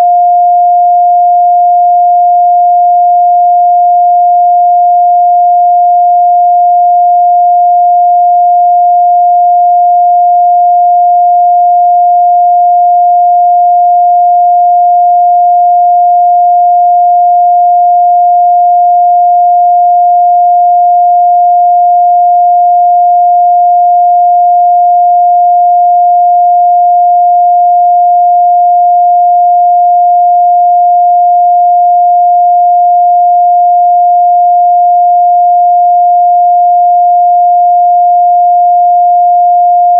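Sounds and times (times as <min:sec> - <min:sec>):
pure sine-wave test tone: 0:00.0 - 0:39.9.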